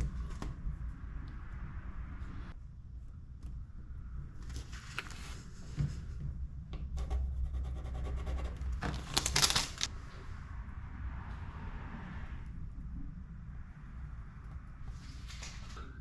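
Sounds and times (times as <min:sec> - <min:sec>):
steady low hum: 0:00.0 - 0:08.9, 0:09.8 - 0:16.0
pencil scratching fibreglass: 0:07.0 - 0:08.7.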